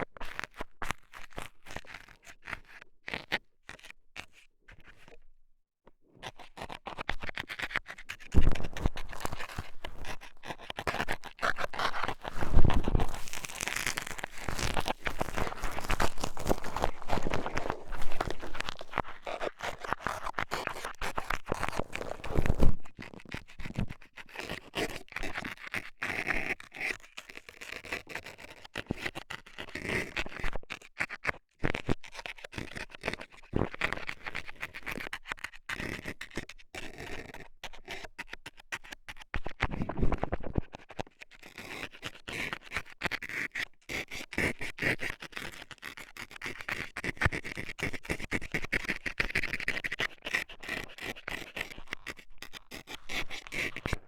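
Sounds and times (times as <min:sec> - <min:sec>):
metal scaler scraping in ear: 0:08.2 - 0:21.0.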